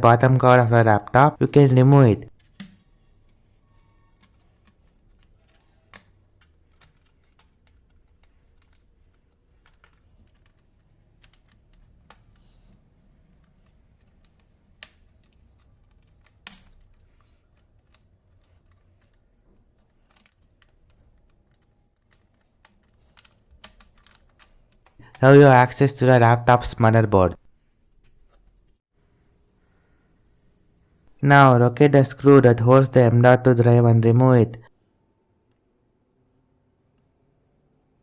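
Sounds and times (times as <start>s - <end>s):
plastic laptop parts clicking: 2.4s - 25.2s.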